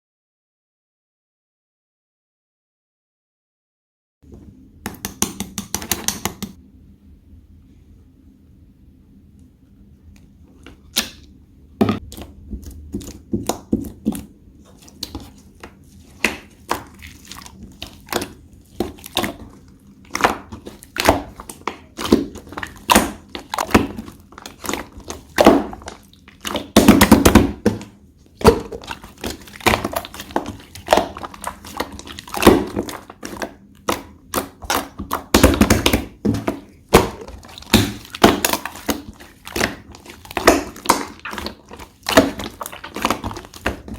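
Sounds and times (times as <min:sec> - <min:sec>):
slime squished by hand: 0:10.6 - 0:43.9.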